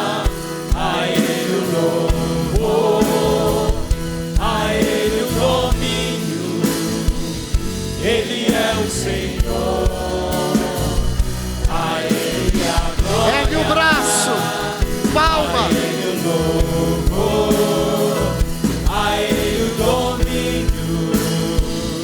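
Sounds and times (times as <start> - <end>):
voices singing together: 0.0 - 22.0
band with drum beat: 8.5 - 21.9.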